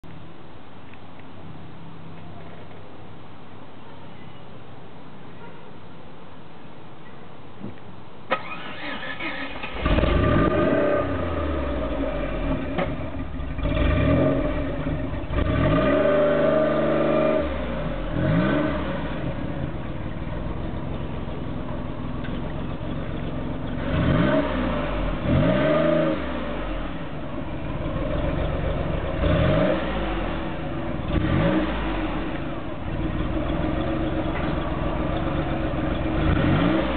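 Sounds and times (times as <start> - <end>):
engine cranking: 8.3 - 10.8
car engine starting and revving: 8.3 - 36.9.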